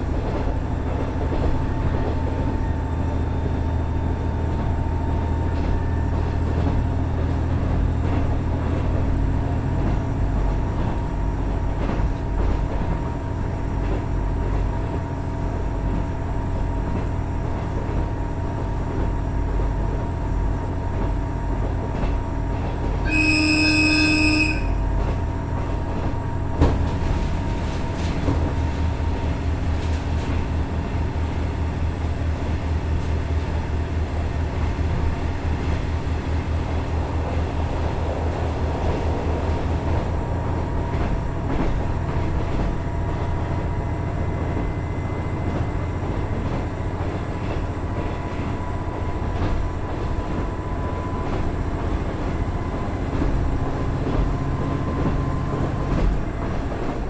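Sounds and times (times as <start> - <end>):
railcar diesel engine running: 0.0 - 57.0
train wheels on rails: 0.0 - 57.0
railcar horn blast: 22.9 - 25.2.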